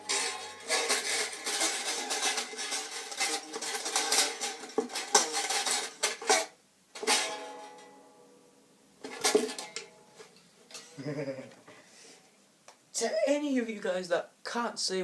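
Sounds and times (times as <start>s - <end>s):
clattering: 0.0s - 7.9s, 9.0s - 11.0s
plucked string instrument music: 0.0s - 11.6s.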